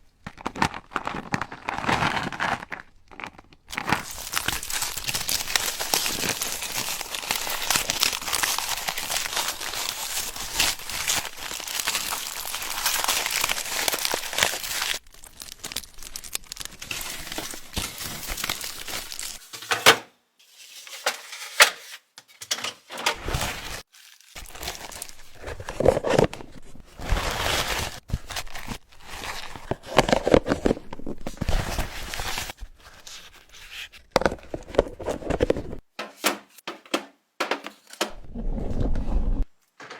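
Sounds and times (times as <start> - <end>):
plastic wrapping crinkling: 0.2 - 33.1
objects being handled: 3.8 - 23.9, 29.3 - 38.3, 39.4 - 39.9.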